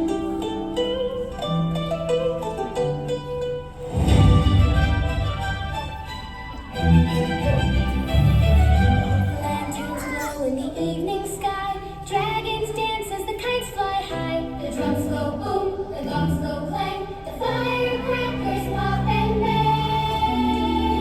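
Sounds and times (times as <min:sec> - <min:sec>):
musical accompaniment: 0:00.0 - 0:21.0
children singing together: 0:08.3 - 0:21.0.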